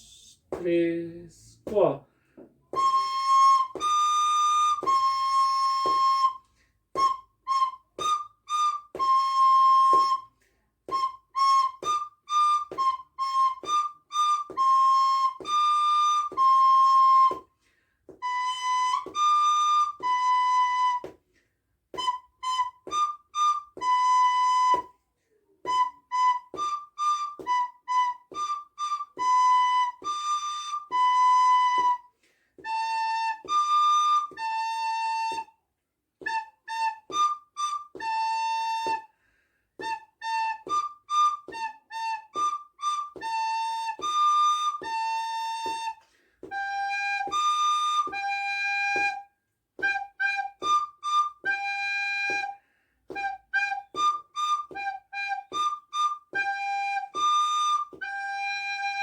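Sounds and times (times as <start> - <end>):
recorder playing slow melody: 2.7 - 6.4, 7.0 - 10.3, 10.9 - 17.4, 18.2 - 21.1, 25.7 - 35.5, 39.8 - 59.0.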